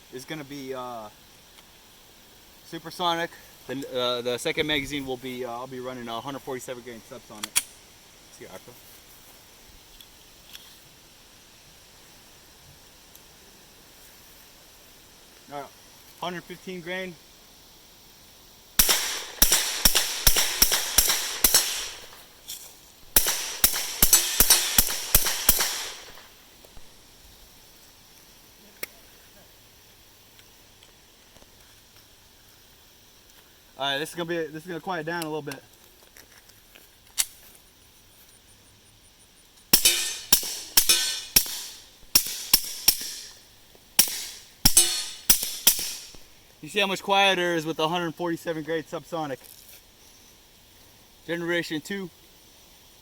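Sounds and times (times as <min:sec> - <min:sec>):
suppressed pistol shots with echo: 0:18.8 - 0:22.2, 0:23.1 - 0:26.3, 0:39.8 - 0:43.4, 0:44.0 - 0:46.2.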